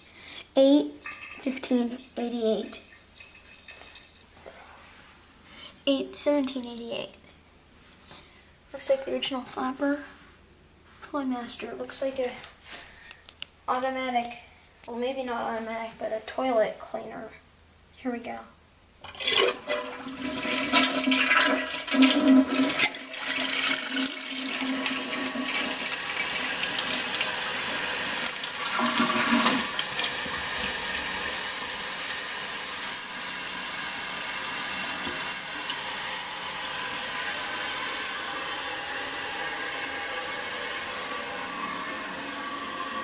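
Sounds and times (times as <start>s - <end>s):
toilet flushing: 19.0s - 43.0s
hiss of tank refilling: 22.4s - 38.2s.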